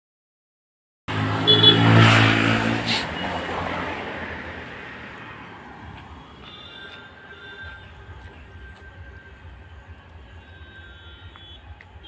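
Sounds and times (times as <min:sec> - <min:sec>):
vehicle engine running: 0:05.0 - 0:12.0.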